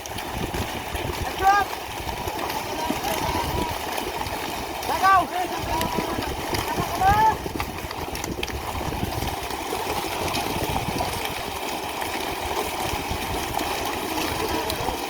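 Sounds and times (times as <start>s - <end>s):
water noise: 0.0s - 15.0s.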